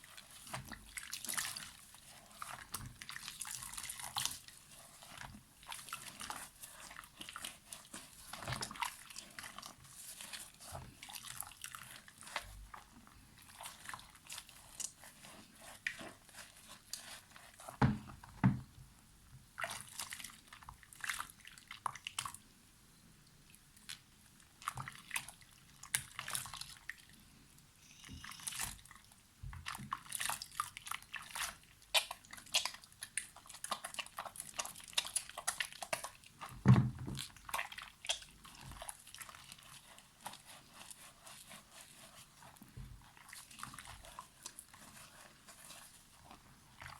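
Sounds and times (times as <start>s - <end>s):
dry soap crunching: 0.0s - 17.9s, 37.3s - 46.9s.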